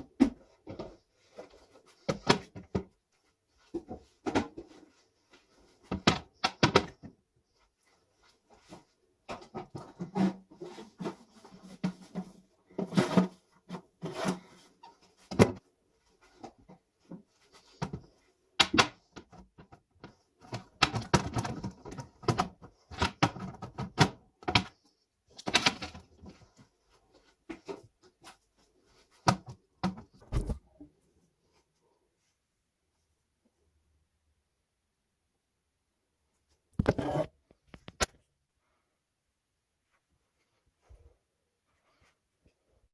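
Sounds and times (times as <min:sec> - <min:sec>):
kitchen items knocking and clattering: 0:05.8 - 0:07.2, 0:16.4 - 0:26.6.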